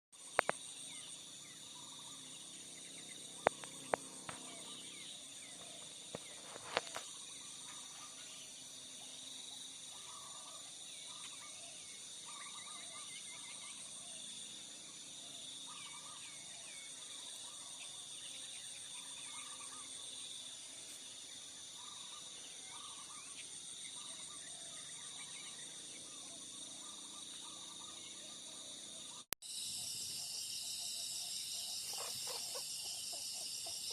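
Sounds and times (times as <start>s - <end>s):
insects buzzing: 0.2s - 33.9s
birds chirping: 31.6s - 33.9s.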